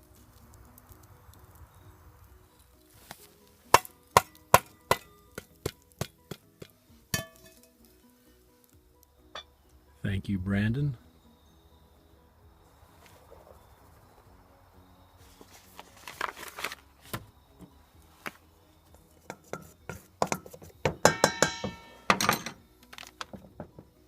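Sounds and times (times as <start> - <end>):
faint background music: 0.0 - 24.0
cookware clinking and knocking: 7.1 - 7.7, 19.3 - 22.6.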